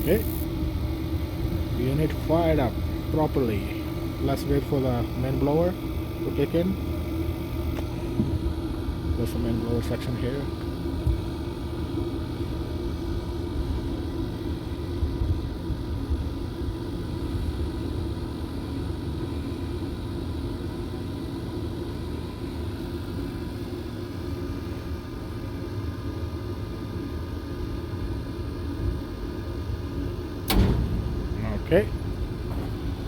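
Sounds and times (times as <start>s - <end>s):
faint steady hum: 0.0s - 33.0s
rooftop hvac unit rumbling: 0.0s - 33.0s.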